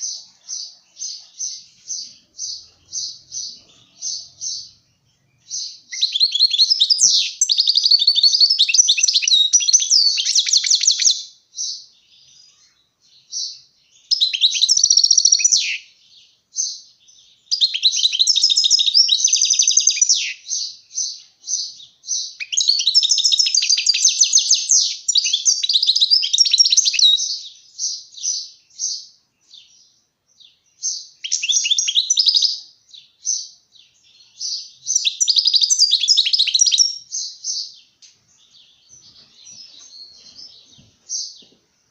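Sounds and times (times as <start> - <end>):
goldfinch singing: 0.0 - 41.6.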